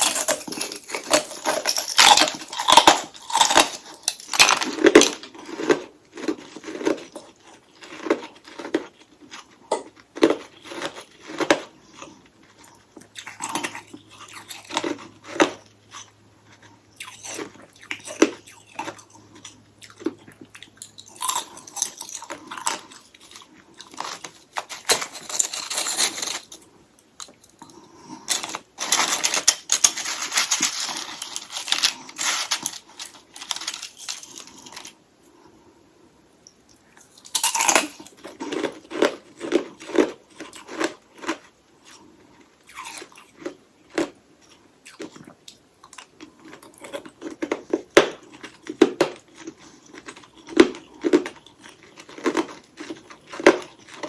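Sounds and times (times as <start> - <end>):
ice crunching: 0.0 - 5.6, 23.3 - 26.6, 28.3 - 34.9
person chewing: 0.0 - 35.4, 36.6 - 54.0.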